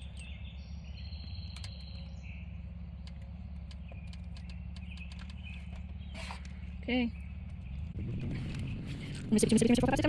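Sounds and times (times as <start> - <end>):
low hum: 0.0 - 10.0.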